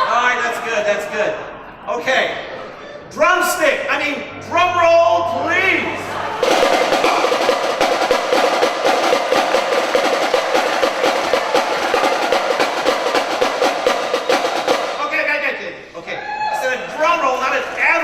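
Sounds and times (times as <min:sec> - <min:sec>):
drum roll: 0:06.3 - 0:15.5.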